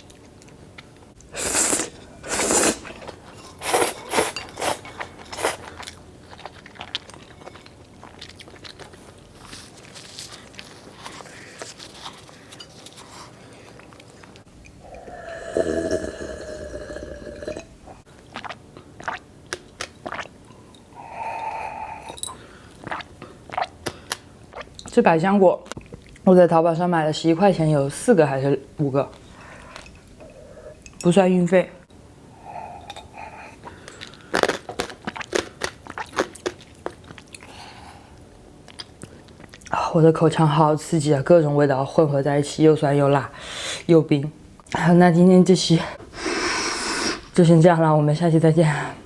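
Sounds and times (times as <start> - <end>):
chewing: 2.8 - 15.2, 19.8 - 20.3, 32.9 - 37.6, 38.6 - 39.7
long held throat sound: 14.8 - 17.7.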